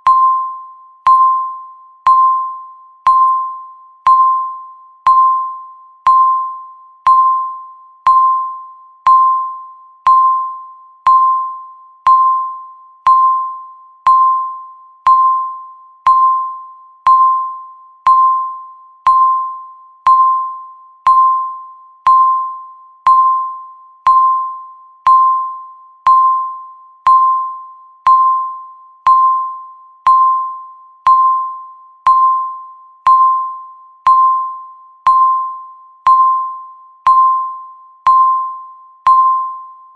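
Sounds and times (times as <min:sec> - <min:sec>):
countdown timer beeping: 0:00.0 - 0:39.8.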